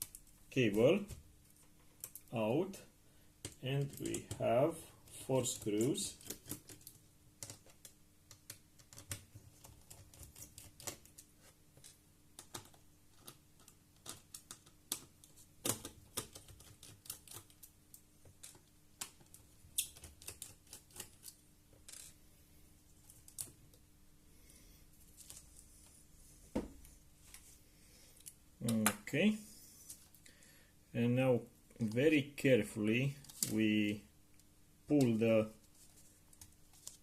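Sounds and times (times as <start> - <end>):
faint steady hum: 0.0 - 37.0.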